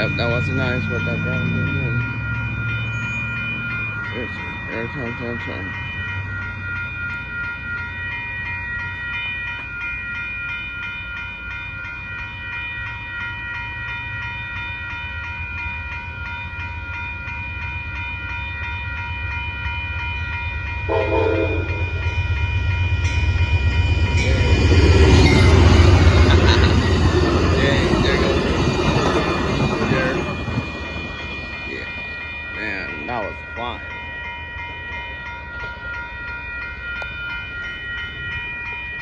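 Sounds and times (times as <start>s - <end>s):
locomotive rumble: 0.0s - 7.7s, 20.1s - 39.0s
train rushing past: 0.0s - 7.7s, 19.0s - 34.0s
crossing warning bell ringing: 0.0s - 39.0s
train horn blast: 20.9s - 22.0s.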